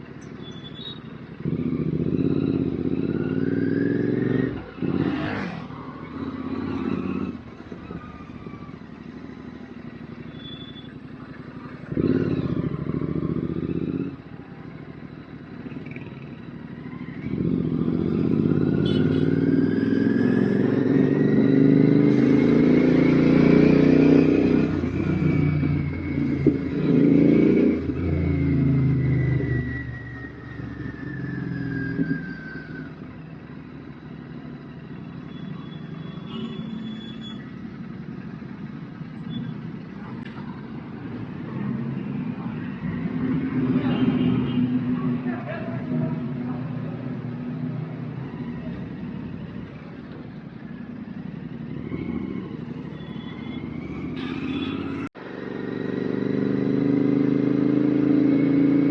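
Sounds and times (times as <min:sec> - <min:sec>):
motorcycle engine revving: 0:00.0 - 0:14.6, 0:15.2 - 0:58.9.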